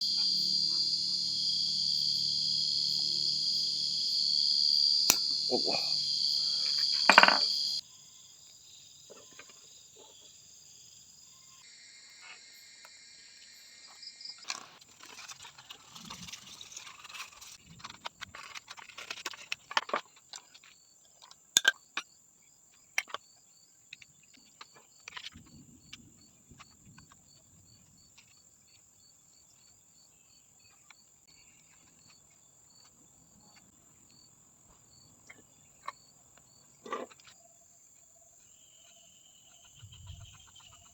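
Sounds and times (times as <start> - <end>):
crickets chirping: 0.0 - 40.9.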